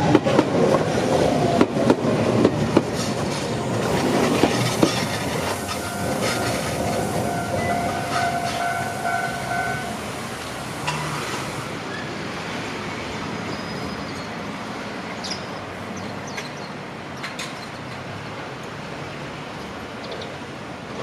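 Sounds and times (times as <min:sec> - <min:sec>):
electric train passing: 0:00.0 - 0:13.5
street traffic: 0:00.0 - 0:21.0.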